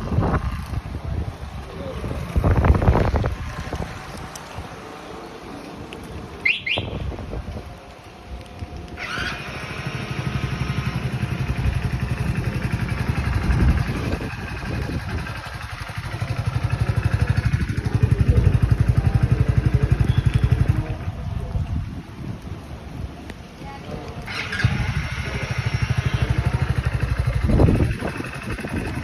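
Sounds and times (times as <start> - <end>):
motorcycle engine idling: 9.0 - 21.6, 24.2 - 29.0.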